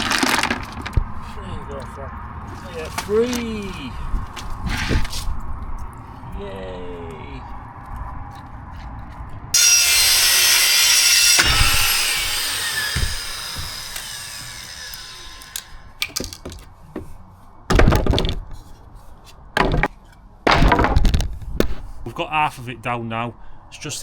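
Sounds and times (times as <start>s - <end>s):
boards squealing and creaking: 9.6s - 18.7s
heavy thuds of boards dropped: 17.7s - 18.6s, 19.6s - 21.8s.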